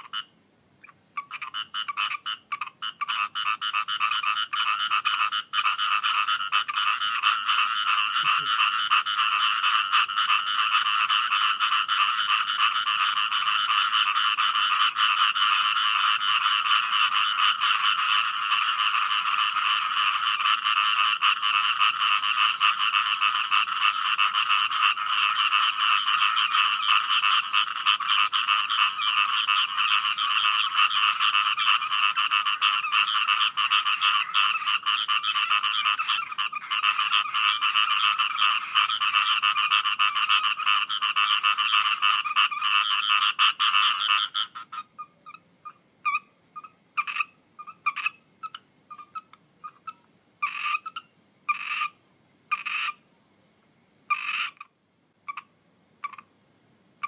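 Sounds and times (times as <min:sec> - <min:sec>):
frogs croaking: 0:00.0 - 0:57.0.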